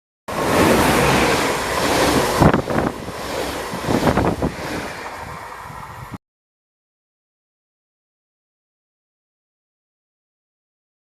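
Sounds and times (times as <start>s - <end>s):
train rumble: 0.3s - 6.2s
wind buffeting microphone: 0.3s - 6.2s.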